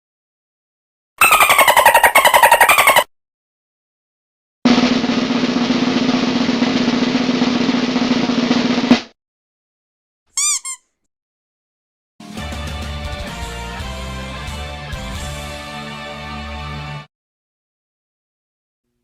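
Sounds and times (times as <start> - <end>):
quick high chirps: 1.2 - 3.1, 10.4 - 10.8
snare drum roll: 4.7 - 9.2.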